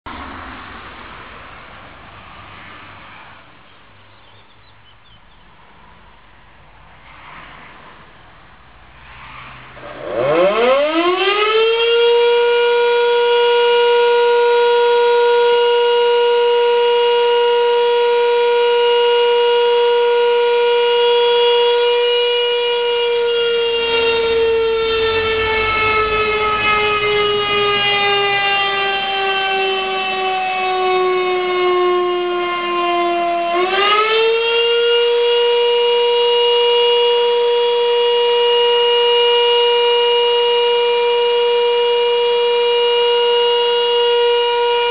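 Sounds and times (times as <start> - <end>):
motor siren wailing: 9.8 - 44.9.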